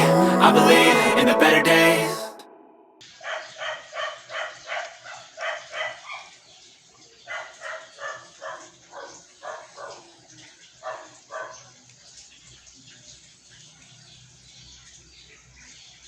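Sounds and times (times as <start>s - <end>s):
dog barking: 3.2s - 6.2s, 7.3s - 10.1s, 10.8s - 11.6s.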